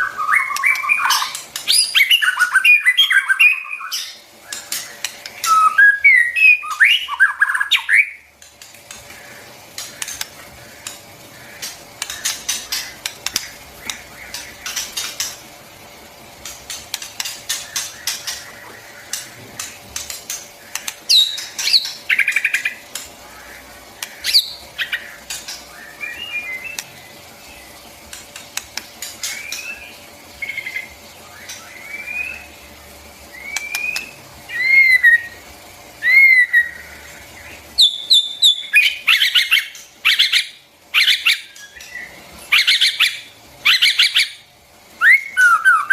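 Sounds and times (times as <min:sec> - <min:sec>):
bird whistling phrases: 0:05.4 - 0:08.2, 0:45.0 - 0:45.9
bird clicking chattering notes: 0:06.5 - 0:31.8.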